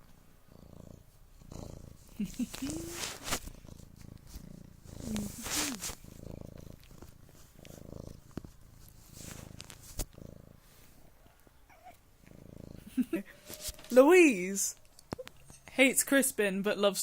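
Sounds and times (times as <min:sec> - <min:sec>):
cat purring: 0:00.0 - 0:14.0.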